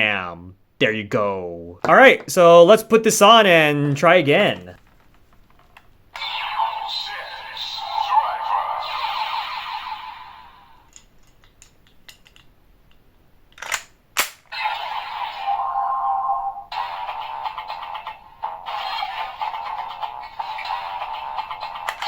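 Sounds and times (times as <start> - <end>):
toy electronic sound effects: 6.2 - 10.5
plastic clicks: 10.9 - 14.5.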